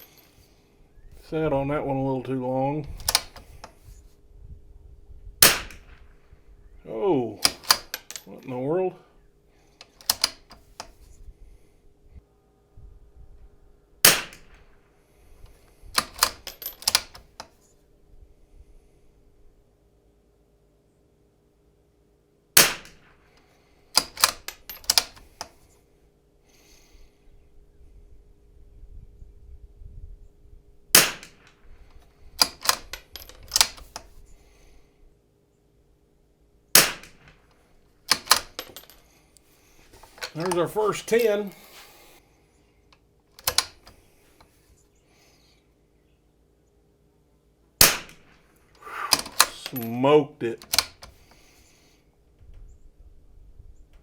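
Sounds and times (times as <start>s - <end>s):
rifle bolt metallic clicks: 2.8s - 3.8s, 5.4s - 6.1s, 7.4s - 8.4s, 9.8s - 11.0s, 15.4s - 17.6s, 22.6s - 25.6s, 31.0s - 34.1s, 36.8s - 39.0s, 40.0s - 41.6s, 42.9s - 44.0s, 47.8s - 50.0s, 50.6s - 51.4s
rifle shot: 5.4s - 6.2s, 14.0s - 14.8s, 22.6s - 23.2s, 30.9s - 31.5s, 36.7s - 37.4s, 47.8s - 48.5s.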